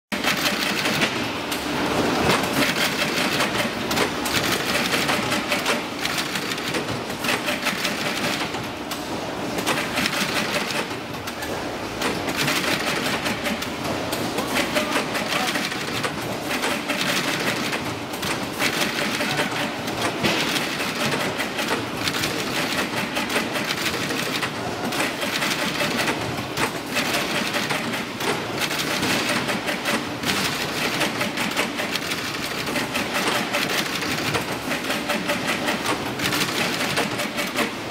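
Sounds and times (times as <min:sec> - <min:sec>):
carton stitching machine stapling: 0:09.6 - 0:37.9.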